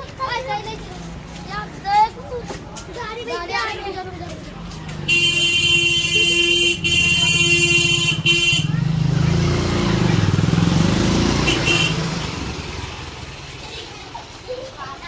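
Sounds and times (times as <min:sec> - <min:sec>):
loud horn blasts: 0:05.1 - 0:08.9, 0:11.3 - 0:12.2.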